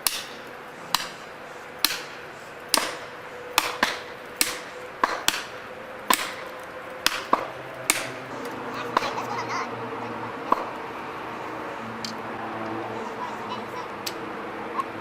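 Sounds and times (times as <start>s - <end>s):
hand tool strikes: 0.0s - 1.2s, 1.8s - 8.2s.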